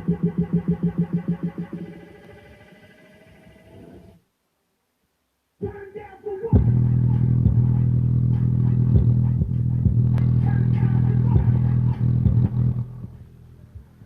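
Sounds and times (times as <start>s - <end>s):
subwoofer playing deep bass: 0.0s - 1.8s, 6.5s - 14.0s.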